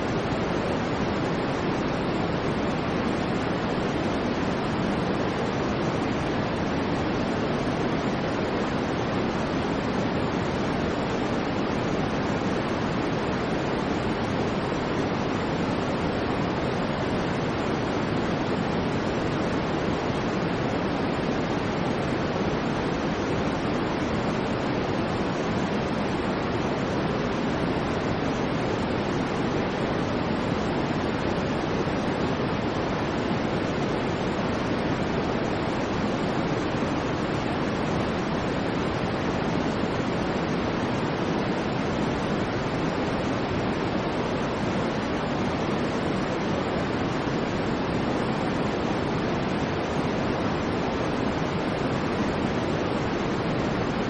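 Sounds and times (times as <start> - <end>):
steady synthetic noise: 0.0 - 54.0.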